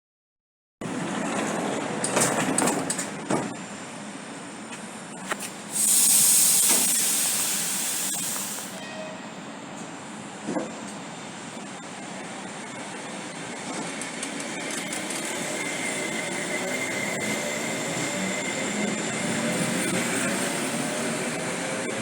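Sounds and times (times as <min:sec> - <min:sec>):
compressed-air hiss: 0:05.7 - 0:08.8.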